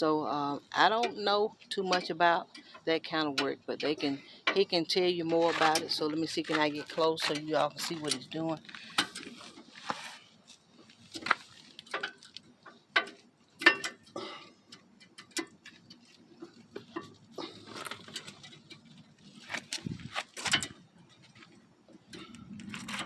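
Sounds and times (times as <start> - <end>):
tools and metal parts clicking: 16.7 - 21.3.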